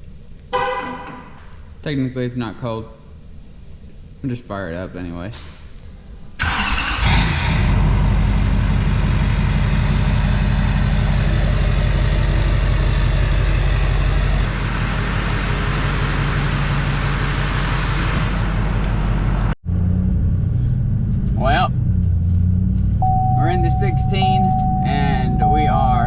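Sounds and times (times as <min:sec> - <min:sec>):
diesel pickup engine idling: 0:07.7 - 0:19.4.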